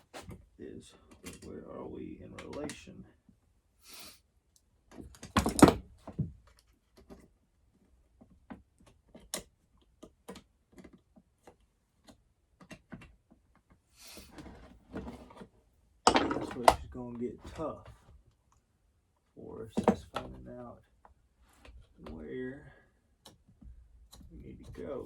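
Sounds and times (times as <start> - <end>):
parts clicking and knocking: 16.1 - 16.9.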